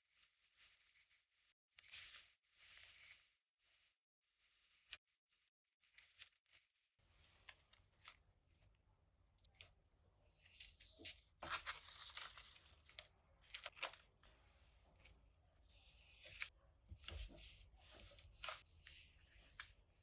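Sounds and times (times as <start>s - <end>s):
paper rustling and crinkling: 10.2s - 19.8s.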